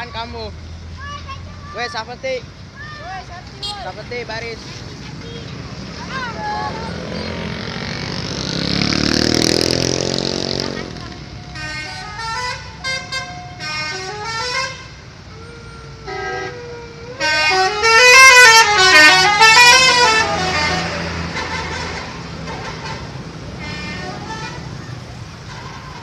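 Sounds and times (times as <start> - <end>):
musical bus horn playing a tune: 11.4 - 15.0, 16.0 - 24.8.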